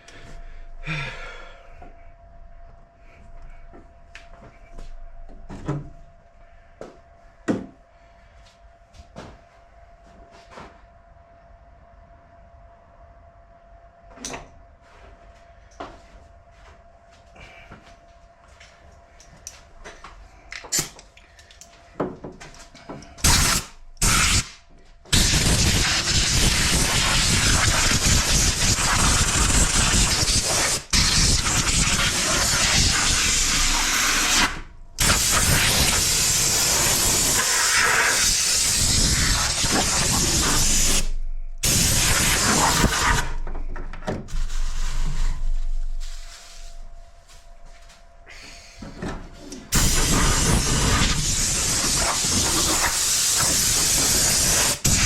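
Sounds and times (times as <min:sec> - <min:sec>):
hiss of rushing air: 0:49.7 - 0:55.0.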